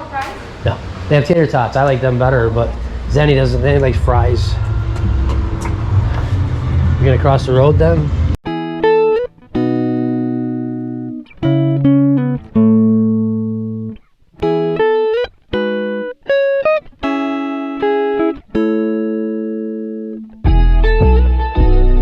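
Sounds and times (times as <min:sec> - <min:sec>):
clean guitar chords: 0:08.5 - 0:16.1.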